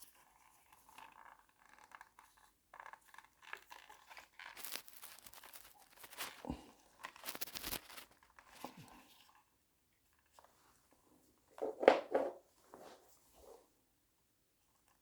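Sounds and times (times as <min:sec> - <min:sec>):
hands handling wires and tape: 0:02.8 - 0:08.9.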